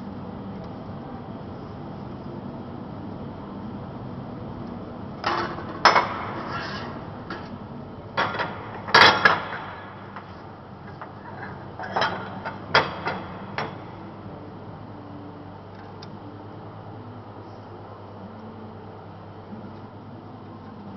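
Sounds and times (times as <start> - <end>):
steady low hum: 0.0 - 20.9
sharp metallic clanks: 8.2 - 14.0.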